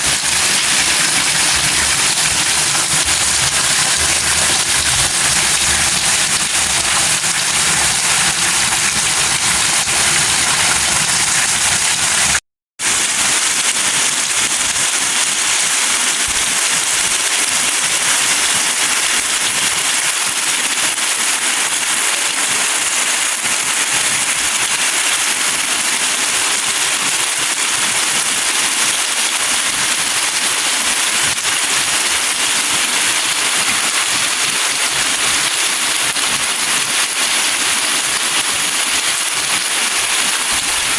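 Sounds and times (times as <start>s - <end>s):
rain falling: 0.0s - 40.9s.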